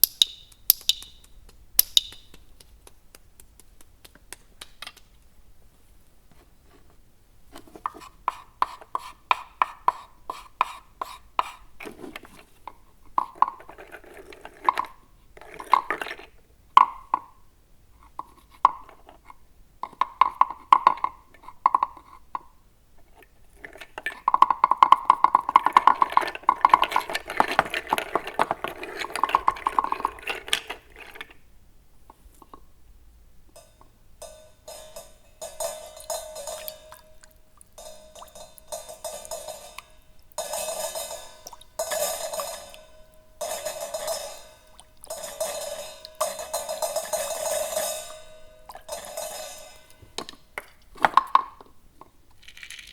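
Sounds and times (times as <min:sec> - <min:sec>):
light high rattle: 0:33.6 - 0:50.2.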